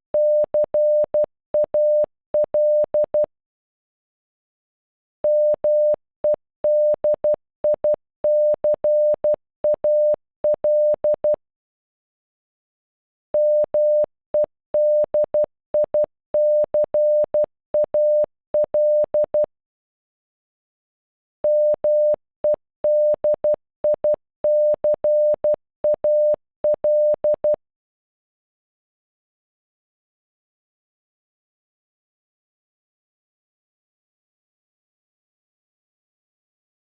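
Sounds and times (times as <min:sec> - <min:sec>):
morse code beeps: 0:00.2 - 0:03.3, 0:05.3 - 0:06.0, 0:06.7 - 0:11.4, 0:13.4 - 0:19.5, 0:21.5 - 0:27.6.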